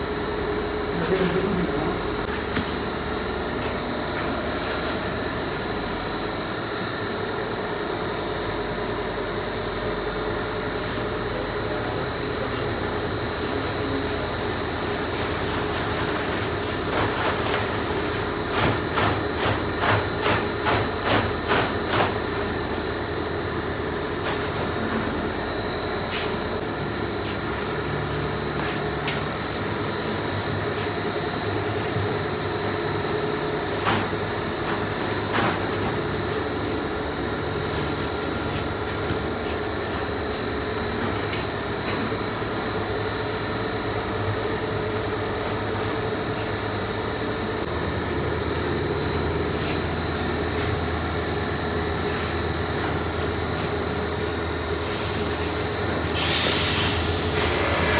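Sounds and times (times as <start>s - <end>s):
factory machinery whining: 19.6s - 57.9s.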